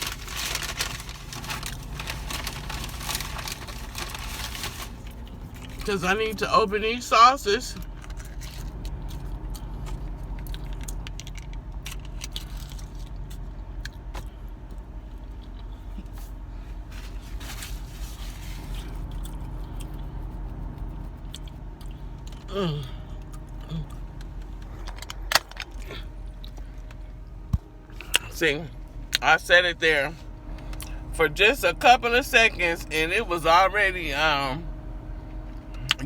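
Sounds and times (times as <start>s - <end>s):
packaging crinkling and clicking: 0.0s - 5.9s, 24.2s - 27.0s
car engine idling: 0.0s - 36.0s.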